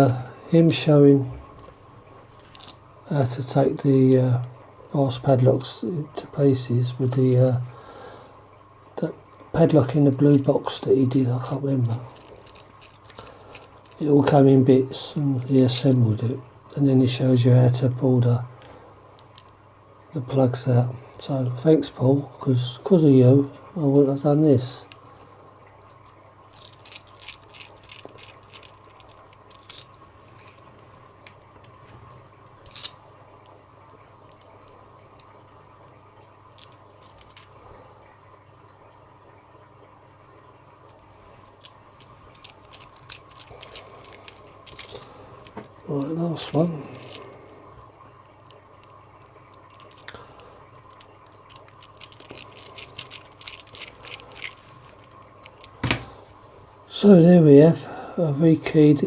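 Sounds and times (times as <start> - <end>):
metallic clicks of padlock parts: 12.1 - 14.0, 25.9 - 31.4, 32.0 - 33.0, 36.6 - 37.5, 40.9 - 47.2, 50.8 - 55.8.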